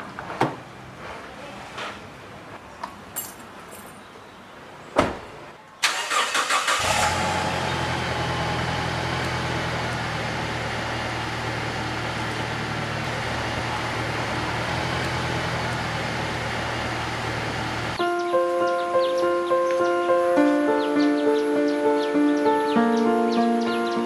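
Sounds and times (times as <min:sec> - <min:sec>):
vehicle engine idling: 0:05.9 - 0:18.0
music with sustained notes: 0:18.0 - 0:24.0.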